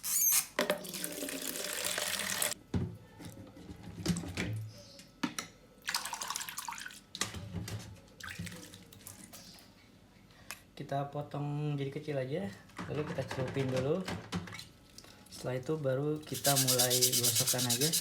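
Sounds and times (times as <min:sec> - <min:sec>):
water running into container: 0:00.8 - 0:02.6.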